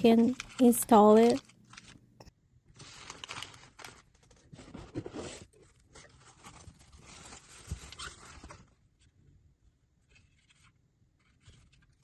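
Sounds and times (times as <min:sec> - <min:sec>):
packaging rustling and scraping: 0:02.8 - 0:08.7.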